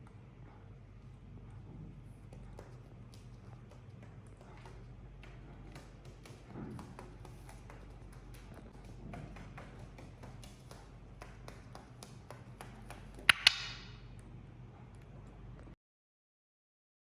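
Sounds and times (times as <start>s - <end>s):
light tapping and clicking: 2.2s - 14.0s.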